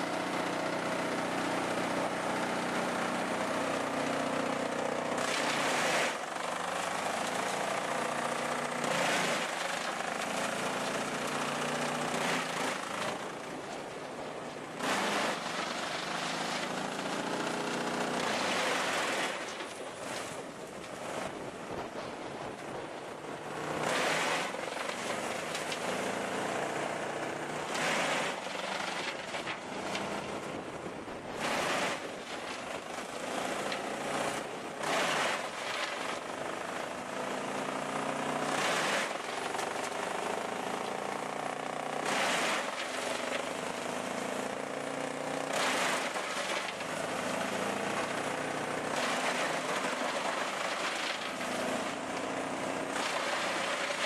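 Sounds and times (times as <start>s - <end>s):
machine engine running: 14.6s - 54.0s.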